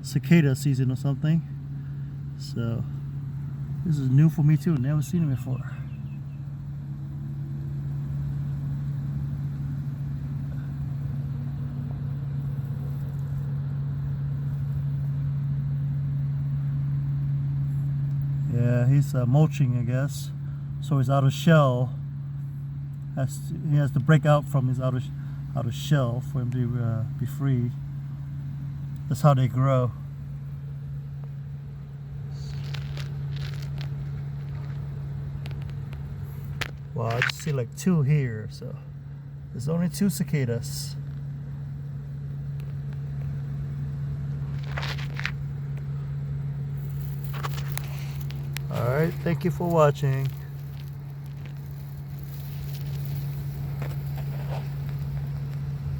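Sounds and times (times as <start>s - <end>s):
low machine hum: 0.0s - 55.9s
light crackles and rustles: 30.0s - 37.8s, 41.0s - 55.9s.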